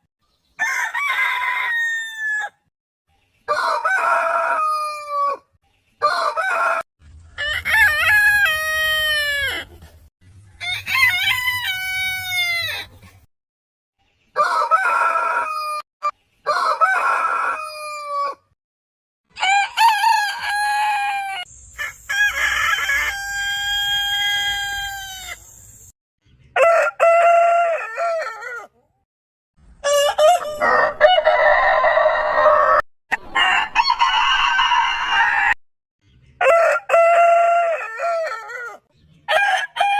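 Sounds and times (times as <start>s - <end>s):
roosters crowing: 0.6s - 2.7s, 3.5s - 5.4s, 6.0s - 9.8s, 10.5s - 12.9s, 14.4s - 15.8s, 16.5s - 18.5s, 19.3s - 25.6s, 26.6s - 28.7s, 29.8s - 35.6s, 36.4s - 39.9s.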